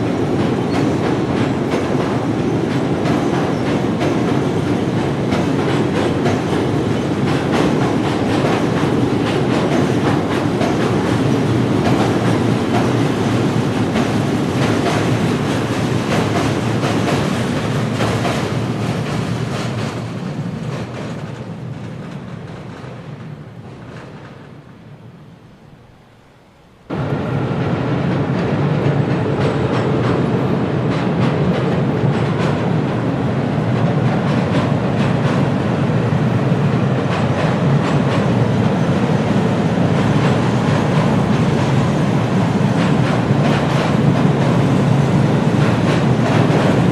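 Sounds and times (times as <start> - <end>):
wheels clicking over rails: 0.0 - 24.6, 36.6 - 46.9
train rumble: 0.0 - 46.9.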